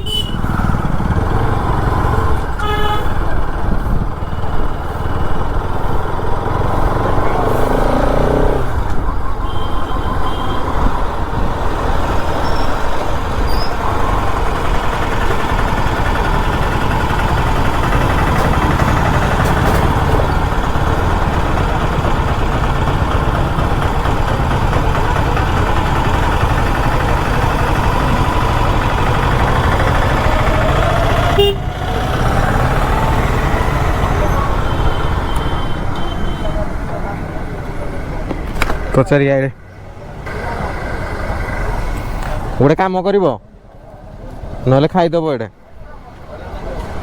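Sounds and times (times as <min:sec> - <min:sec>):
motorcycle engine running: 0:00.0 - 0:09.2, 0:10.2 - 0:38.3.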